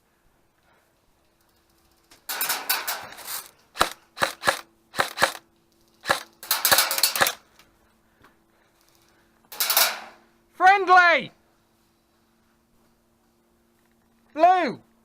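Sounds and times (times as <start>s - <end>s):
airsoft gun bursts: 2.3s - 7.4s
airsoft single shots: 3.8s - 5.4s.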